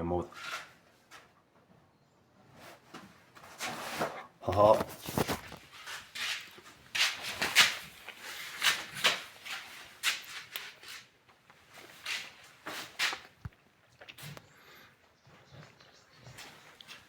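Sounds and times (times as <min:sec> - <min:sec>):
wet chewing: 0:07.6 - 0:14.8
breathing: 0:14.4 - 0:15.1.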